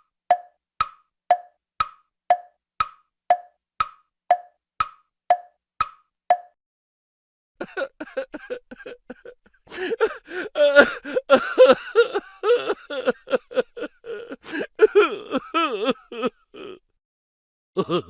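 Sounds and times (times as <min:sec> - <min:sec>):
comedy giggling voice: 0:07.6 - 0:16.9, 0:17.8 - 0:18.0.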